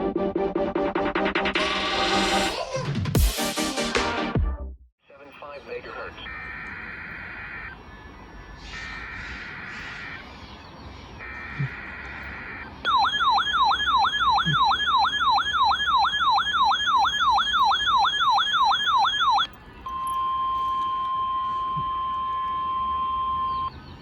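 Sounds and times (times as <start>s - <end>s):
warbling alarm: 6.1s - 10.3s, 11.2s - 23.8s.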